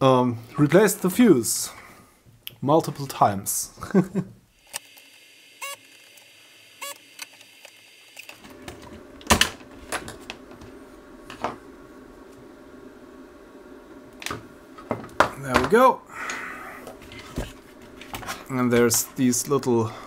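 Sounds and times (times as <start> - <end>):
steady low hum: 8.4 - 20.0.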